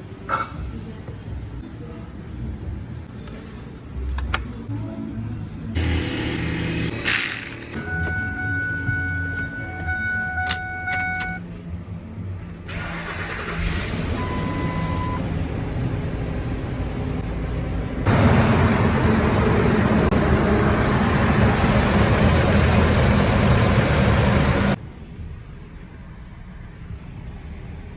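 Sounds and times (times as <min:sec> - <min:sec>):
harsh starter and engine noise: 0:05.8 - 0:07.8, 0:12.6 - 0:15.8, 0:18.0 - 0:24.8
low engine hum: 0:12.9 - 0:24.8.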